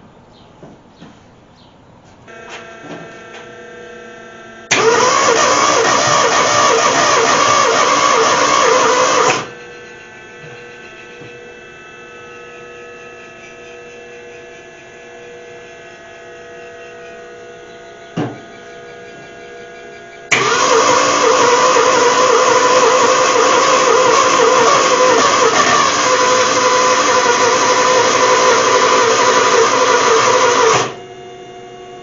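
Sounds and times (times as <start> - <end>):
car engine running roughly: 4.7 - 9.6, 20.3 - 31.0.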